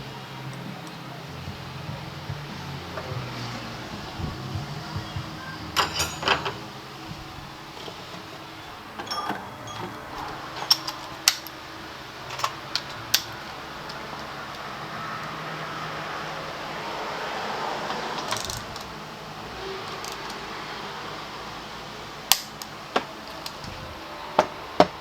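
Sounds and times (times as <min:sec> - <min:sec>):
steady background hum: 0:00.0 - 0:25.0
metal tools clinking: 0:05.7 - 0:11.7.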